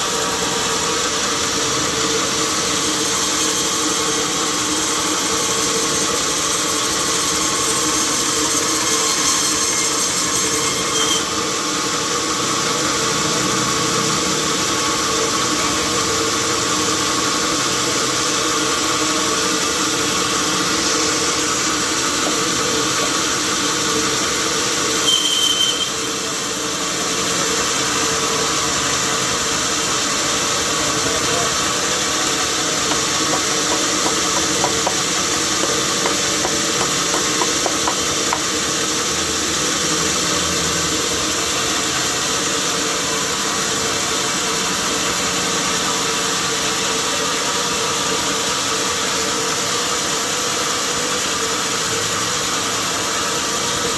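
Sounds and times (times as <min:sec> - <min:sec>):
sawmill machinery hum and hiss: 0:00.0 - 0:53.9
high machine squeal: 0:02.4 - 0:12.3, 0:20.3 - 0:43.6.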